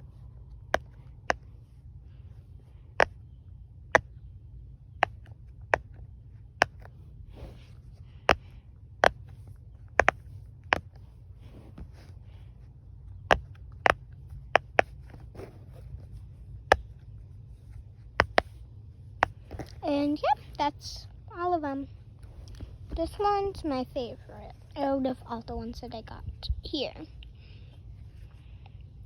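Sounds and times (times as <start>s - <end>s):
faint low hum: 0.0s - 29.0s
fidget toy popping: 3.0s - 3.2s, 5.0s - 6.0s, 6.6s - 7.6s, 8.2s - 9.4s, 10.0s - 11.0s, 13.2s - 15.5s, 18.2s - 18.5s.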